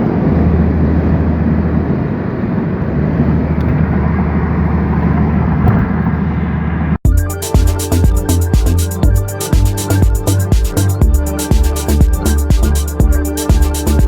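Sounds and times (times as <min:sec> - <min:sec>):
car road and wind noise: 0:00.0 - 0:07.0.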